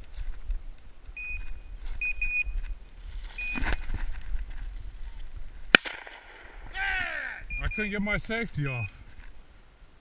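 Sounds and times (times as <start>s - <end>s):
rustle of movement through cover: 0.0s - 5.6s
short electronic beeps: 1.2s - 2.6s, 3.4s - 3.8s, 7.5s - 8.0s.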